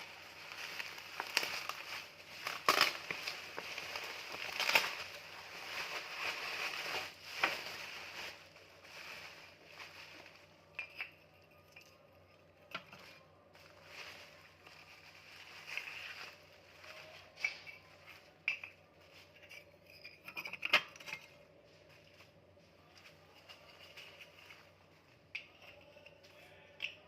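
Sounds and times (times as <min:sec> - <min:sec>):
packaging crinkling and rustling: 0:00.0 - 0:10.7, 0:12.9 - 0:19.4.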